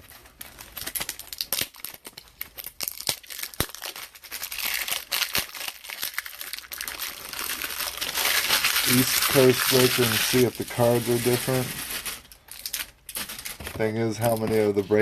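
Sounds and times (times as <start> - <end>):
foil wrapper crinkling and tearing: 0.0 - 15.0.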